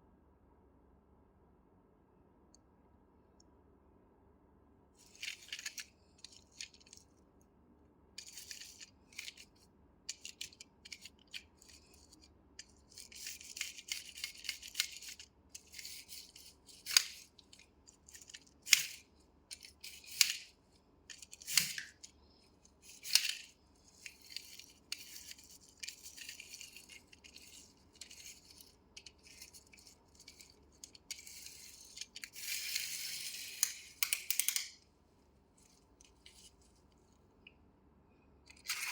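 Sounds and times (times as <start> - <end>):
rustling and crinkling: 5.0 - 7.1, 8.2 - 37.3.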